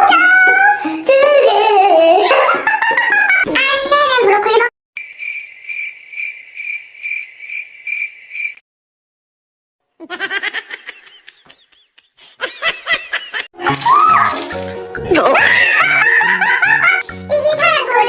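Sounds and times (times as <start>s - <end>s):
cricket chirping: 5.0s - 8.6s.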